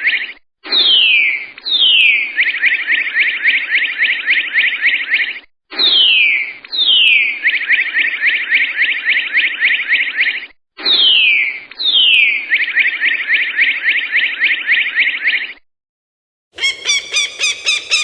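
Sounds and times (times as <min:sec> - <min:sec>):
high trilled animal call: 0:16.6 - 0:18.0.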